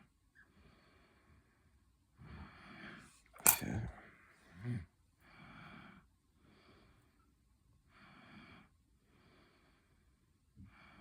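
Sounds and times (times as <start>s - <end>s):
man breathing close to microphone: 7.9s - 11.0s.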